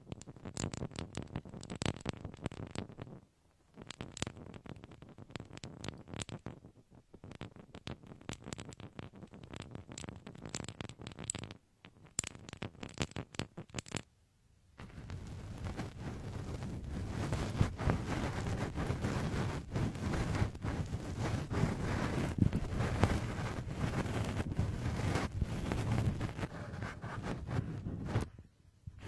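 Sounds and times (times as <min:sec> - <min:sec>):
nail file scratching: 0:15.2 - 0:28.3.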